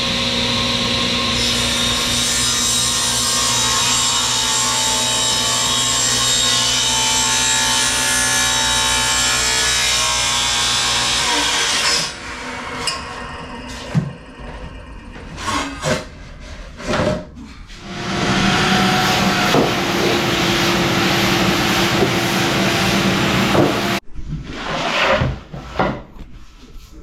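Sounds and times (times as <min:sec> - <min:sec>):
electric power saw cutting: 0:00.0 - 0:15.8, 0:17.8 - 0:24.0.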